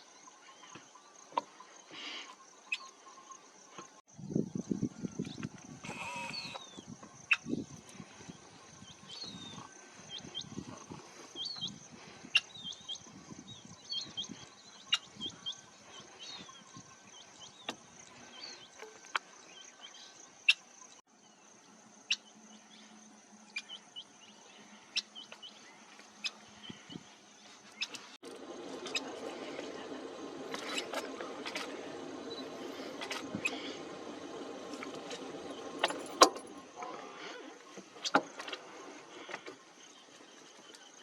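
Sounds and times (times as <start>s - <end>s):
high insect drone: 1.9s - 11.0s.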